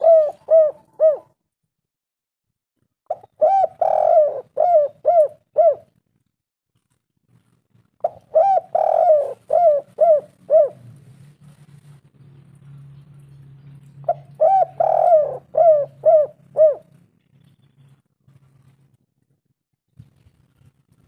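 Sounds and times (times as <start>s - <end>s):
dove cooing: 0.0s - 1.4s, 3.1s - 6.0s, 8.0s - 11.0s, 14.0s - 17.0s.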